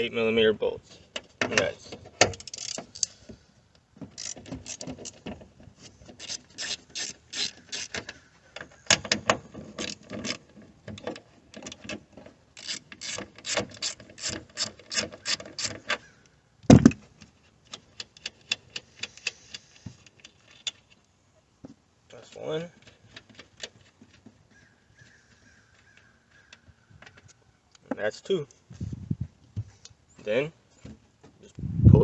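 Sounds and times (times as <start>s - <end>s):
ratchet wrench clicking: 2.4s - 3.1s, 4.2s - 5.2s
loud knock: 16.7s - 17.0s.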